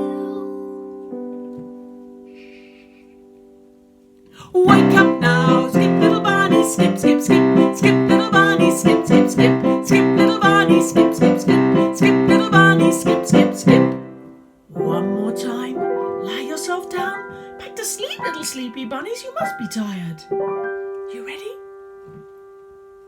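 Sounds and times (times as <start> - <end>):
lively piano music: 0.0 - 23.0
held chord: 4.6 - 14.5.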